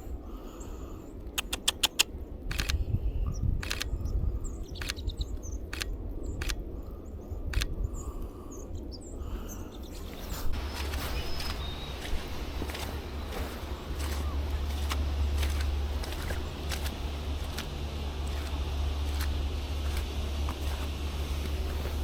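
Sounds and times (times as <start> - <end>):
faint bird chirps: 3.2 - 19.3.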